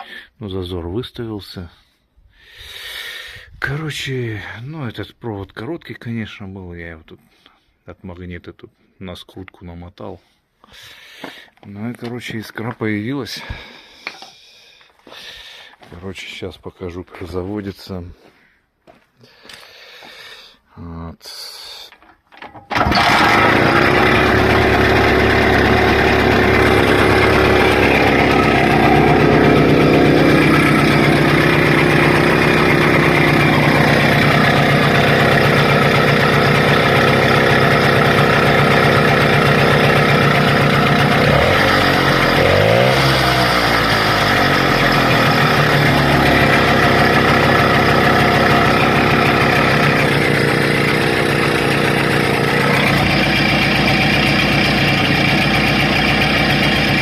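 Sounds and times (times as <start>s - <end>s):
scooter engine running: 22.7s - 57.0s.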